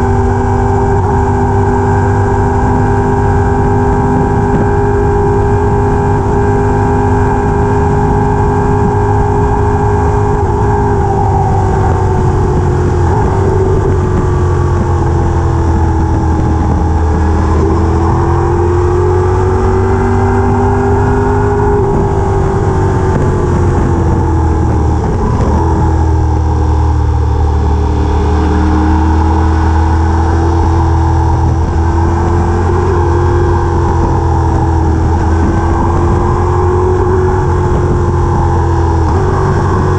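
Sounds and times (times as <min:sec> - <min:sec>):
vehicle engine humming: 0:00.0 - 0:39.9.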